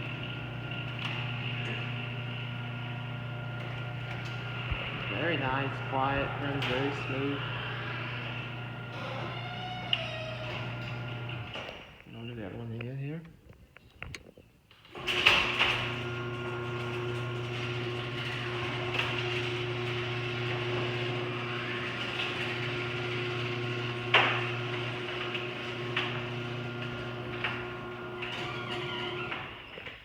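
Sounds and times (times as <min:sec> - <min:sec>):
garage door opener motor humming: 0:00.0 - 0:12.0, 0:14.9 - 0:30.0.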